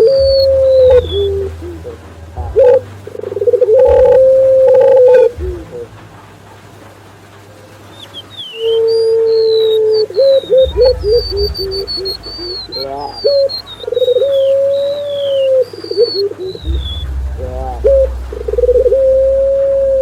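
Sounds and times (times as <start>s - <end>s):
low rumble: 0.0s - 8.0s, 10.4s - 20.0s
doves cooing: 0.0s - 20.0s
songbird high descending whistles: 7.9s - 17.0s.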